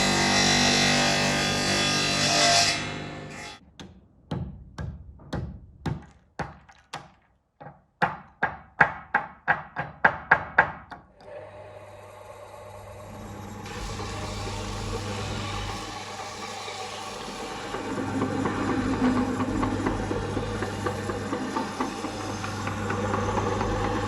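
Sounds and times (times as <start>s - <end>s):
electric shop machine humming: 0.0s - 3.6s, 11.2s - 24.0s
hammer strikes on metal: 3.8s - 7.1s.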